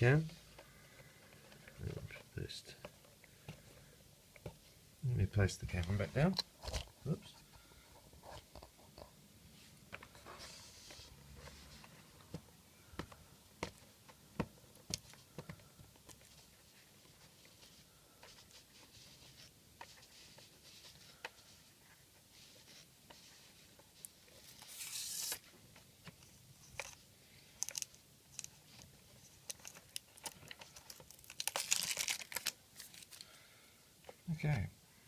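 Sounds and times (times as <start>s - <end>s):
plastic crinkling and tearing: 24.5s - 25.4s, 27.6s - 28.6s, 29.4s - 33.3s.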